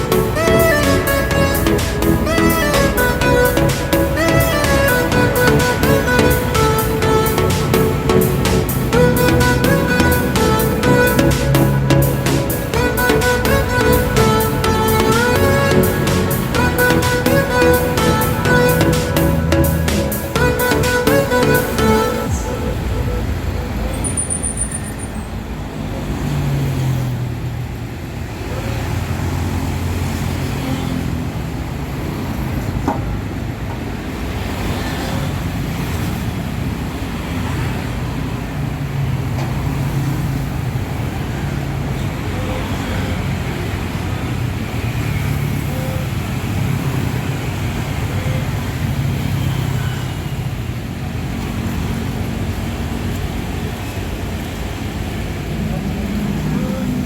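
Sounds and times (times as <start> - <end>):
vehicle engine humming: 0.0 - 33.4
road traffic noise: 0.0 - 57.0.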